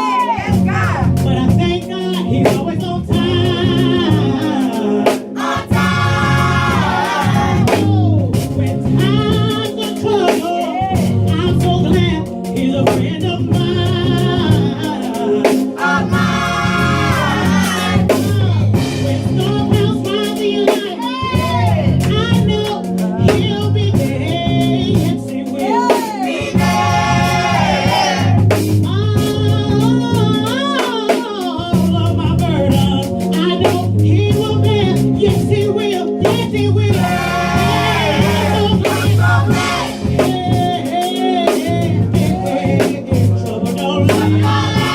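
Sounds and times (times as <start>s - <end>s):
band playing: 0.0s - 44.9s
drums beat: 0.0s - 44.9s
group singing: 3.1s - 9.8s, 13.7s - 22.0s, 22.8s - 28.6s, 36.8s - 44.9s.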